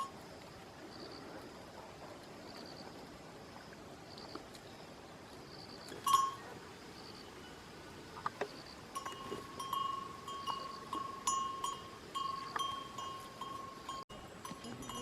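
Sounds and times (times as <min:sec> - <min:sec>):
goat bells clanking: 0:06.0 - 0:06.5, 0:08.9 - 0:15.0.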